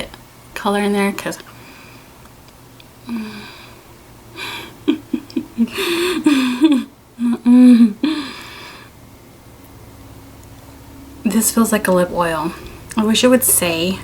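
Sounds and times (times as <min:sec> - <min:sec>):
woman making breathy sounds: 0:04.4 - 0:08.9.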